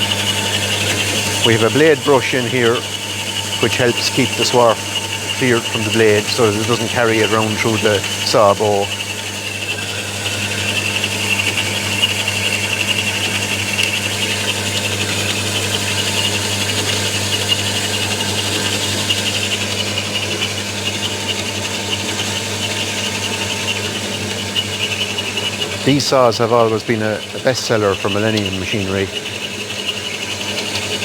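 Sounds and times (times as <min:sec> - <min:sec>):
bandsaw motor hum: 0:00.0 - 0:31.0
bandsaw blade hissing: 0:00.8 - 0:09.0.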